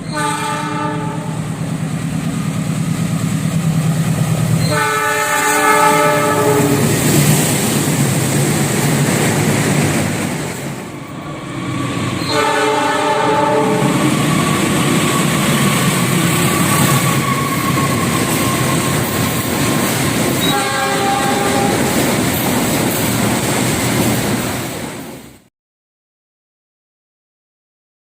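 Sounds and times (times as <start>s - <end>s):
train air horn: 0.0s - 1.6s, 4.6s - 7.0s, 12.2s - 14.2s, 20.4s - 22.0s
passing train rumble and clatter: 0.0s - 25.5s.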